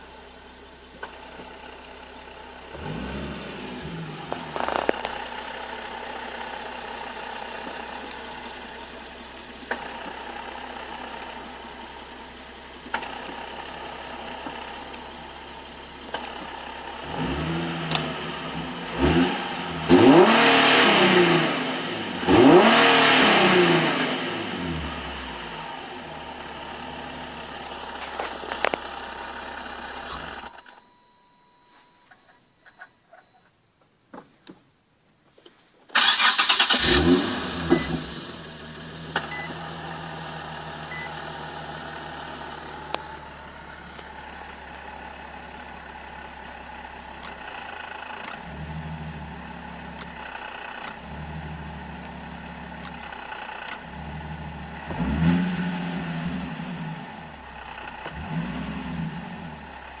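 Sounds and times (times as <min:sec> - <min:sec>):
car engine revving and idling: 0:00.0 - 0:30.6, 0:36.0 - 1:00.0
starter motor cranking: 0:35.9 - 0:38.0.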